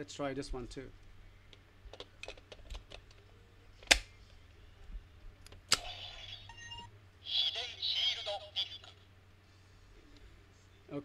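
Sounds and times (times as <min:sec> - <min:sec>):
plastic snap: 0:03.8 - 0:04.2
electronic toy tones: 0:06.0 - 0:06.9.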